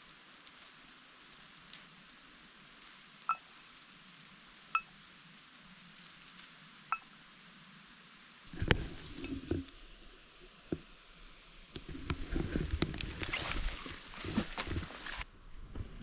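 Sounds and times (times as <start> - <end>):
crunching and rustling: 8.5 - 10.1, 11.8 - 16.0
footsteps through vegetation: 11.9 - 15.9.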